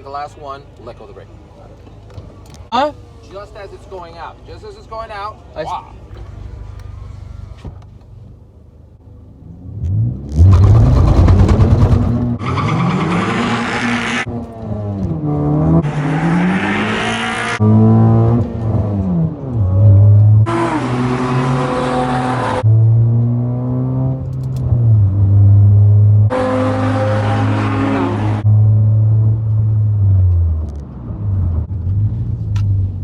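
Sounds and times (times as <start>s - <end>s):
car engine at full throttle: 6.1s - 33.0s.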